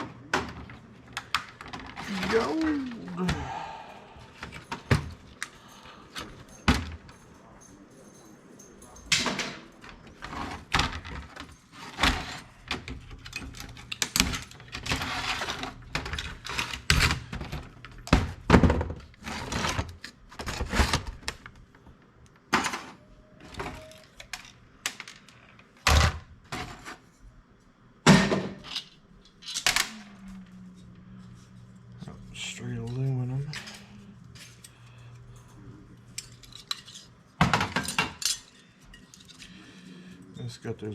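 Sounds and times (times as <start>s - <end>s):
computer parts knocking and rattling: 9.1s - 21.5s.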